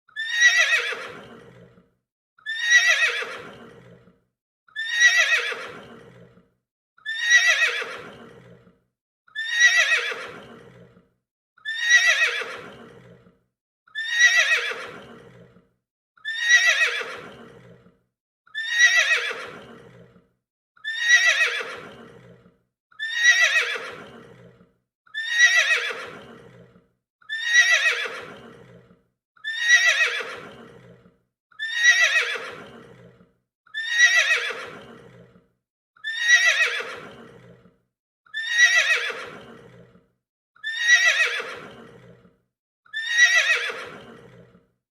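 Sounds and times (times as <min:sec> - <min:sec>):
horse whinnying: 0:00.2 - 0:01.8, 0:02.4 - 0:04.1, 0:04.7 - 0:06.4, 0:07.0 - 0:08.7, 0:09.4 - 0:11.0, 0:11.6 - 0:13.3, 0:14.0 - 0:15.5, 0:16.2 - 0:17.9, 0:18.5 - 0:20.2, 0:20.8 - 0:22.4, 0:23.0 - 0:26.7, 0:27.3 - 0:35.4, 0:36.0 - 0:37.6, 0:38.3 - 0:39.9, 0:40.6 - 0:42.2, 0:42.9 - 0:44.6.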